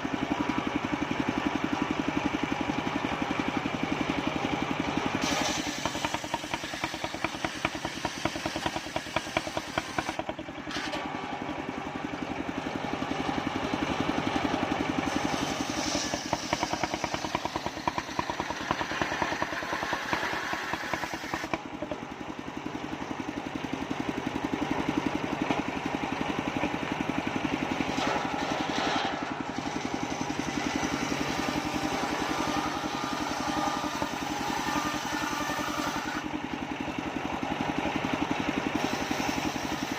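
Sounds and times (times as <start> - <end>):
sawmill engine running: 0.0 - 39.9
saw cutting high-pitched: 15.1 - 21.6, 30.6 - 36.3.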